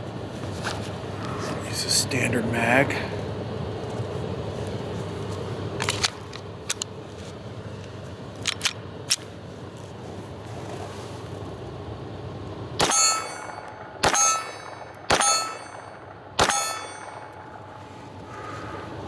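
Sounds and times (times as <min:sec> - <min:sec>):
metallic clicks of pistol handling: 0:05.8 - 0:06.9, 0:08.4 - 0:09.3
loud gunshot: 0:12.8 - 0:17.2.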